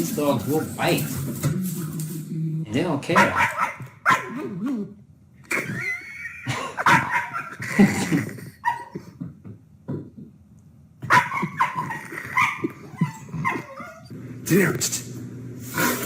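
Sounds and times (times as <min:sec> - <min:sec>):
dog barking and yipping: 0:03.1 - 0:04.5, 0:06.8 - 0:07.6, 0:08.6 - 0:09.0, 0:11.0 - 0:14.1.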